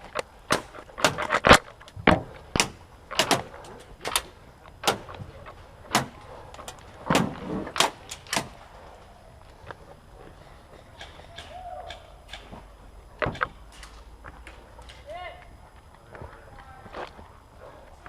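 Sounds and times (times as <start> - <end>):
dull thuds: 0.0 - 3.7, 4.7 - 8.6.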